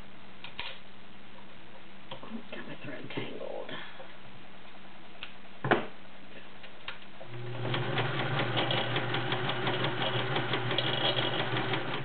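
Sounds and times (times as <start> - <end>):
sewing machine stitching: 7.3 - 12.0.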